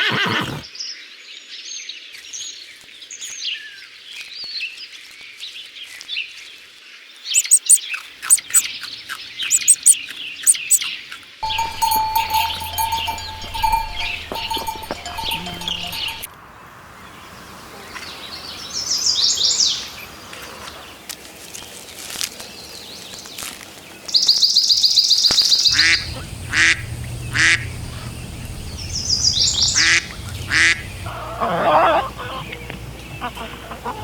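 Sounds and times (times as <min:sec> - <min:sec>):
ducks quacking: 0:25.7 - 0:28.2, 0:29.7 - 0:34.0.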